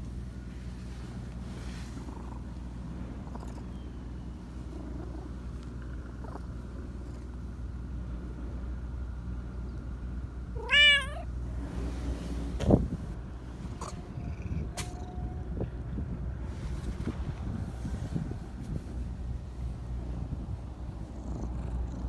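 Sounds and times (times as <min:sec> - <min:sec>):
steady low hum: 0:00.0 - 0:22.0
cat meowing: 0:10.6 - 0:11.3.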